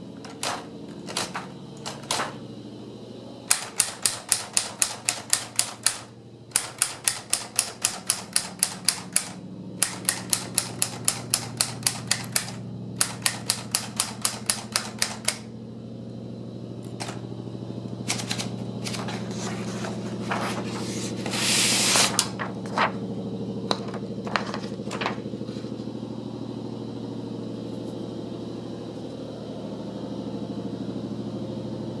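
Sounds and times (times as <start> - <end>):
steady low hum: 0.0 - 32.0
typewriter typing fast: 0.2 - 2.4, 3.5 - 15.5, 16.8 - 17.2, 18.0 - 23.0, 24.2 - 25.3
scattered clicks: 3.5 - 15.5.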